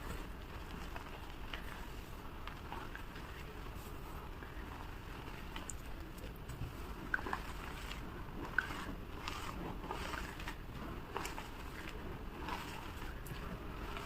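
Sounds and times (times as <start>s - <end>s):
chalk crunching and crackling: 0.0s - 14.0s.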